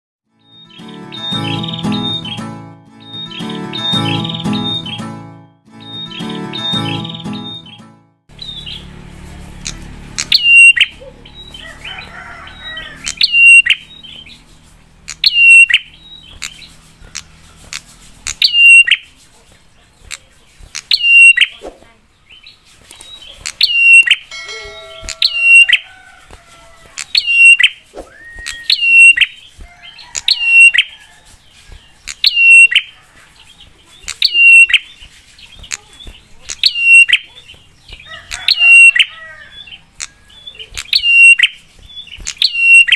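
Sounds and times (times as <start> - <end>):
bird calling sharp notes: 0.4 - 8.9, 9.6 - 14.4, 15.0 - 19.2, 20.1 - 21.6, 23.2 - 26.3, 26.9 - 30.9, 32.1 - 33.0, 34.0 - 35.0, 35.6 - 37.5, 38.1 - 42.9.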